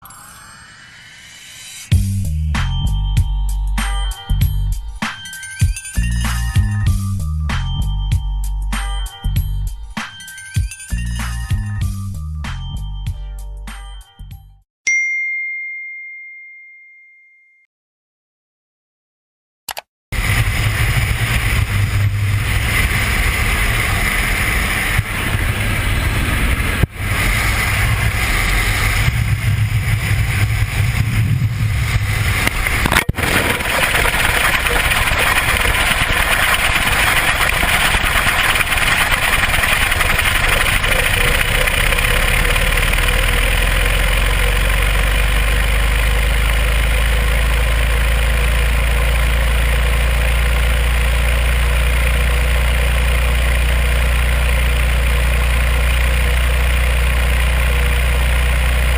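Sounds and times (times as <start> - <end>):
wind roaring over microphone: 20.2 - 43.4
deep rumble: 20.2 - 58.9.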